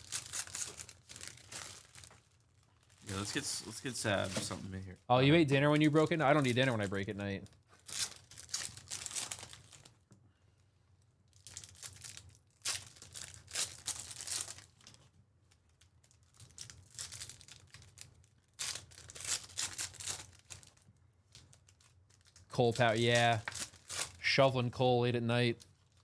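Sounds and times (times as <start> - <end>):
foil wrappers tearing and crinkling: 0.0 - 4.6, 5.8 - 7.1, 7.7 - 10.0, 11.3 - 15.0, 15.7 - 24.3.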